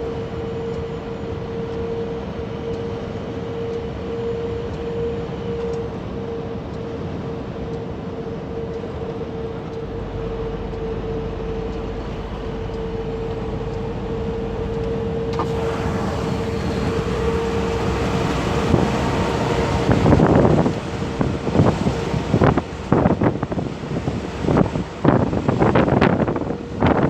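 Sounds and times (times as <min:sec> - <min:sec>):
truck droning hum: 0:00.0 - 0:27.0
road noise: 0:05.8 - 0:27.0
wind buffeting microphone: 0:09.8 - 0:27.0.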